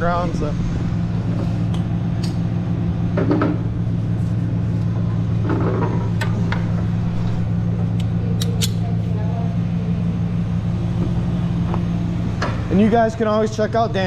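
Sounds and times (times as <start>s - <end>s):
truck engine idling: 0.0s - 14.0s.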